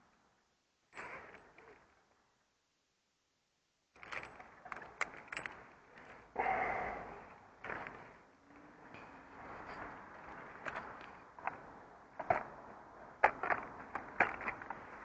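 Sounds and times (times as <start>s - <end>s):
sharp clicks and knocks: 13.2s - 14.9s.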